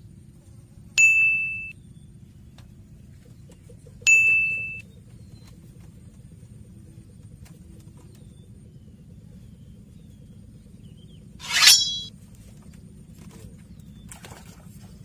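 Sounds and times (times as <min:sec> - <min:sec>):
small metal bell ding: 0:01.0 - 0:01.7, 0:04.1 - 0:04.8.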